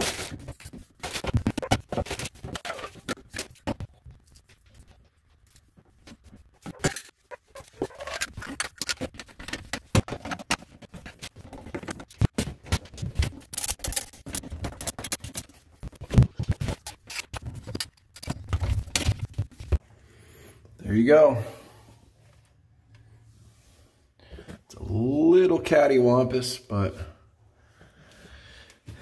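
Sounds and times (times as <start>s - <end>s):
pipe parts scraping and clicking: 0.0s - 19.8s.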